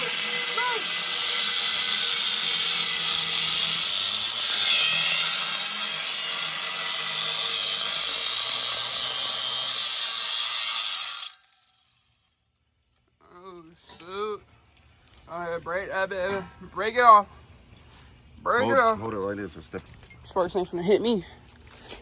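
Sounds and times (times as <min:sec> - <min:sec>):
angle grinder cutting metal: 0:00.0 - 0:11.8.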